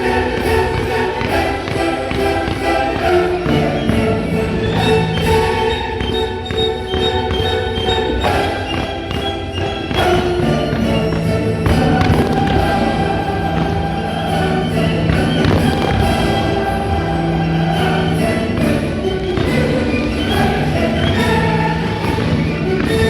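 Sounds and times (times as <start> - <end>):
orchestral music: 0.0 - 23.0
firework bangs: 0.7 - 14.3, 15.0 - 17.6.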